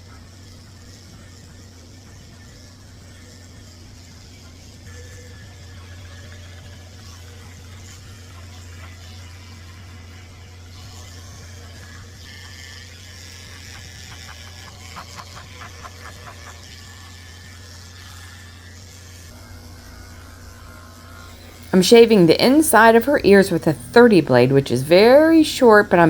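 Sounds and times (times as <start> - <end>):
electric clippers humming: 0.0 - 26.0.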